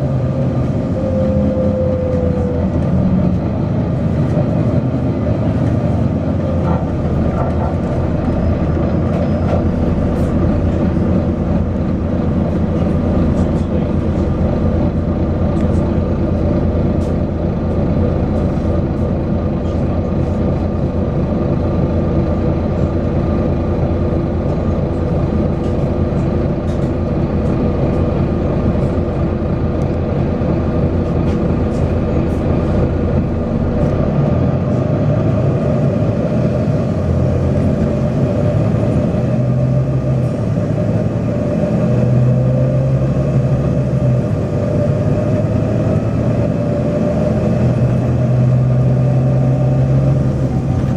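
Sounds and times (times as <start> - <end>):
bus diesel engine running: 0.0 - 50.9.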